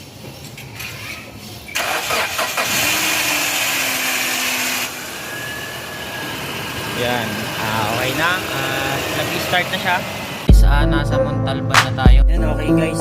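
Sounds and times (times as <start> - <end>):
engine cranking and starting: 0.8 - 8.4
engine idling: 1.8 - 10.5.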